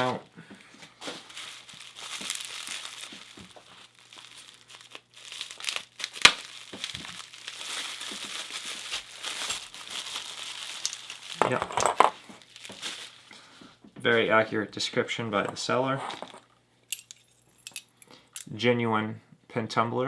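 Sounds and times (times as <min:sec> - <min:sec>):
plastic packaging crinkling: 0:01.0 - 0:13.5.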